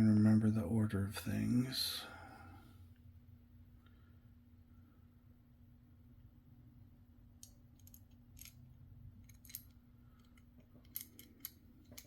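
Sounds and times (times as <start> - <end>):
low steady hum: 0.0 - 12.0
small gears clicking: 9.2 - 12.0.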